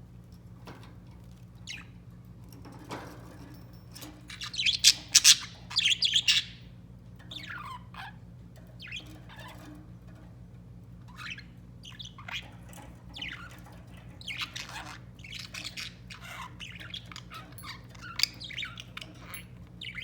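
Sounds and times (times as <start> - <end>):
budgerigars chirping and warbling: 1.7 - 2.0, 4.0 - 6.7, 7.3 - 9.8, 11.1 - 20.0.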